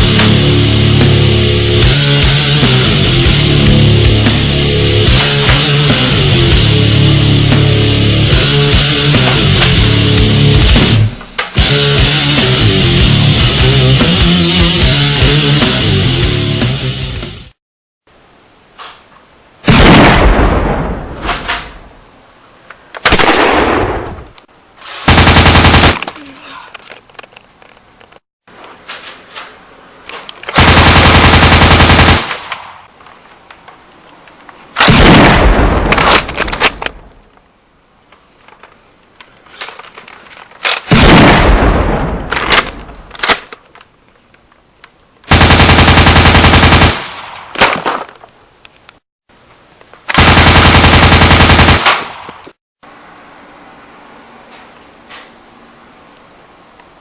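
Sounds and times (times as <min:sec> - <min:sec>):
machine-gun fire: 0:19.6 - 0:20.9, 0:23.0 - 0:24.1, 0:25.1 - 0:26.1, 0:30.5 - 0:32.9, 0:34.8 - 0:36.3, 0:40.9 - 0:42.7, 0:45.3 - 0:48.0, 0:50.1 - 0:52.4.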